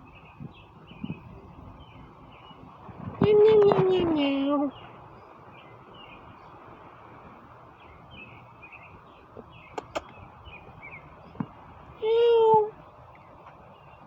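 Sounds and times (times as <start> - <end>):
birds chirping: 0.0 - 14.0
sharp clicks: 9.7 - 10.1.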